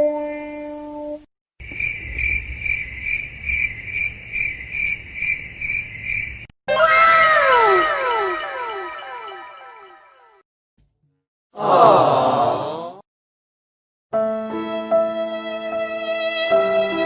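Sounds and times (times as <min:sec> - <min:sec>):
cricket chirping: 0:01.6 - 0:06.5
falling tones effect: 0:06.7 - 0:10.4.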